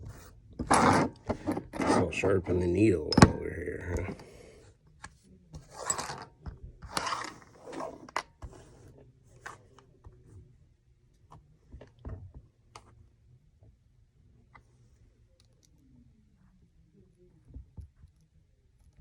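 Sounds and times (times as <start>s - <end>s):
needle scraping on sharpener: 0.6s - 2.5s, 6.9s - 8.2s.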